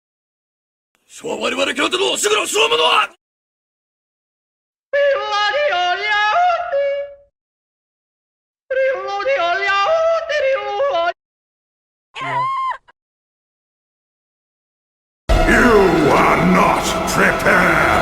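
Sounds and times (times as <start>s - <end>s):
cartoon yodel: 5.0s - 7.3s.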